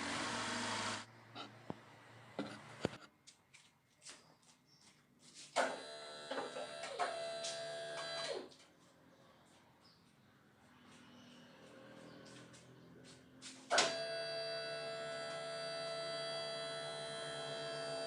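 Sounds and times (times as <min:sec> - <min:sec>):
small power tool motor whirring: 0:00.0 - 0:01.1, 0:05.6 - 0:08.5, 0:13.8 - 0:18.0.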